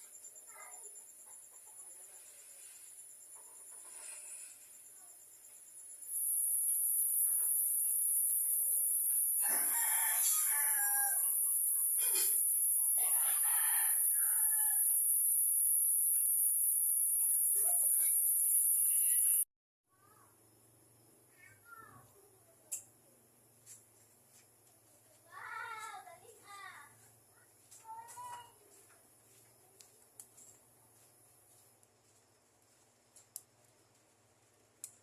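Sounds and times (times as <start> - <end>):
steady high-pitched buzz: 2.0 - 19.4
rooster crowing: 9.4 - 11.5, 13.0 - 15.0.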